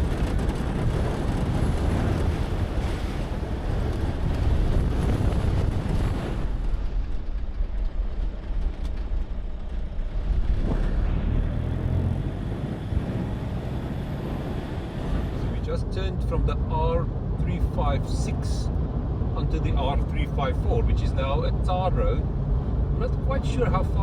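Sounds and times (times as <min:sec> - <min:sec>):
vehicle driving on gravel: 0:00.0 - 0:15.7.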